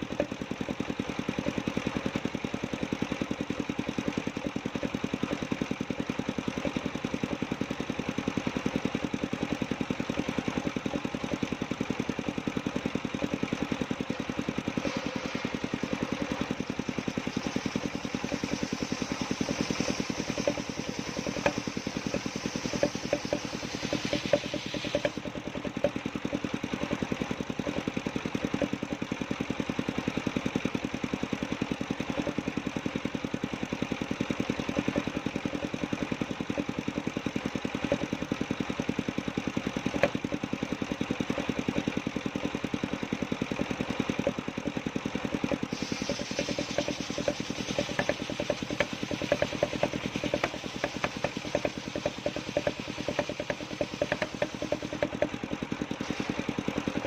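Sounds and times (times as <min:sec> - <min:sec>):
sawmill engine running: 0:00.0 - 0:57.0
saw blade cutting wood: 0:13.2 - 0:28.9, 0:39.6 - 0:42.0, 0:43.6 - 0:55.4, 0:56.0 - 0:57.0.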